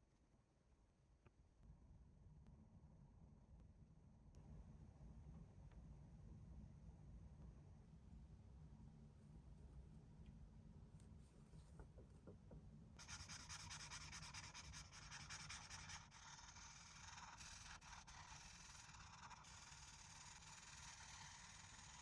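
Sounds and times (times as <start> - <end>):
faint rubbing or scratching: 13.0 - 22.0.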